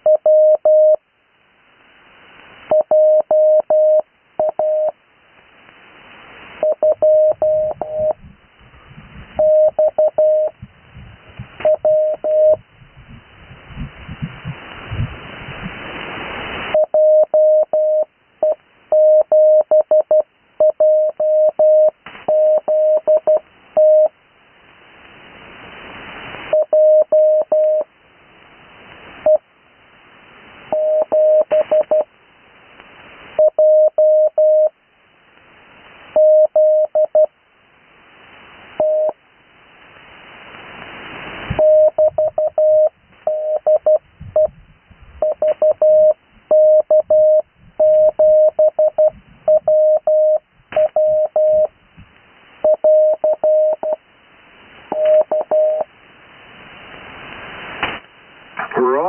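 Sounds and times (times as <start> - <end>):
morse code tone: 0.0 - 1.0, 2.7 - 4.9, 6.6 - 8.2, 9.4 - 10.6, 11.6 - 12.6, 16.7 - 24.1, 26.5 - 27.8, 30.7 - 32.1, 36.2 - 37.3, 38.8 - 39.1, 41.6 - 44.5, 45.2 - 51.7, 52.6 - 54.0, 54.9 - 55.9
radio hiss: 14.4 - 18.6, 56.9 - 59.0.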